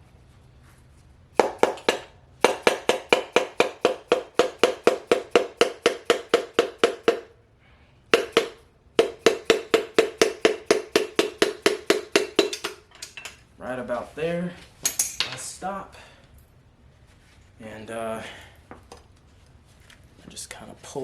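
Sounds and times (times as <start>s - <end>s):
hammer tapping on metal: 1.4s - 7.3s, 8.1s - 13.4s.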